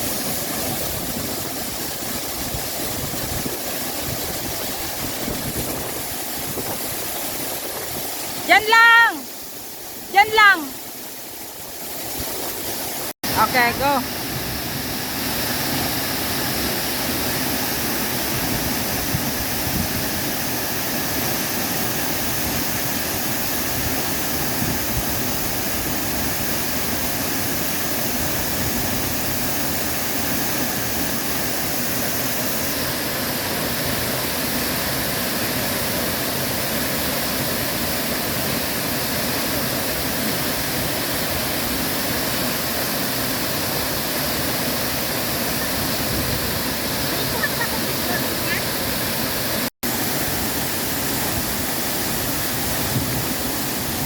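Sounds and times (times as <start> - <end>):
waterfall rushing: 0.0 - 54.0.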